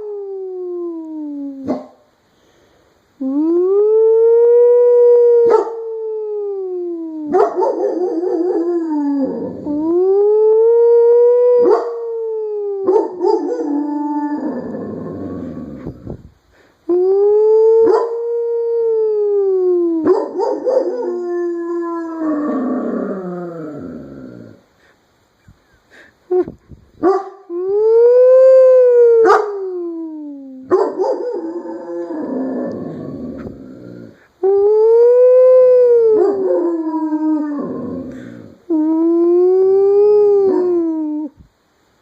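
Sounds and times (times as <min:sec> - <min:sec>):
person imitating a siren howl: 0:00.0 - 0:01.6, 0:03.2 - 0:07.3, 0:08.6 - 0:12.9, 0:16.9 - 0:20.1, 0:27.5 - 0:30.7, 0:31.7 - 0:41.4
dog howling: 0:16.9 - 0:24.6, 0:27.5 - 0:41.3.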